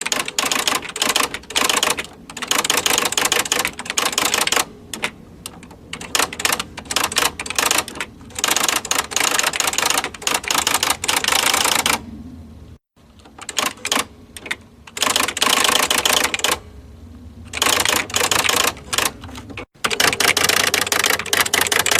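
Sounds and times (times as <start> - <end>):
electric typewriter key strikes: 0.0 - 12.0, 13.3 - 16.6, 17.5 - 21.9
typewriter motor hum: 0.0 - 12.0, 13.2 - 16.6, 17.5 - 21.9.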